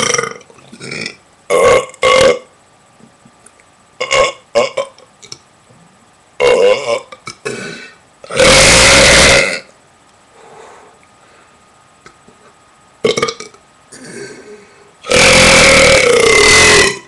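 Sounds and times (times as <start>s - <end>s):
person burping: 0.0s - 2.5s, 4.0s - 5.1s, 6.4s - 9.7s, 13.0s - 17.0s.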